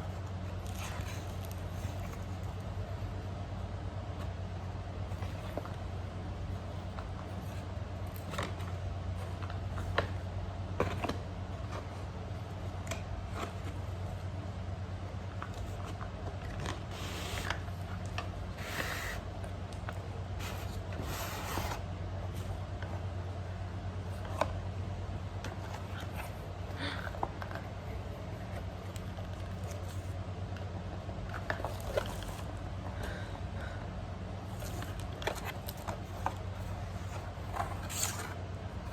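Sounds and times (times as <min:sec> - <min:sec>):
packaging rustling and scraping: 0:00.0 - 0:02.7, 0:06.6 - 0:14.4, 0:15.2 - 0:23.2, 0:25.4 - 0:30.3, 0:31.1 - 0:33.0, 0:34.4 - 0:38.9
steady low hum: 0:00.0 - 0:38.9.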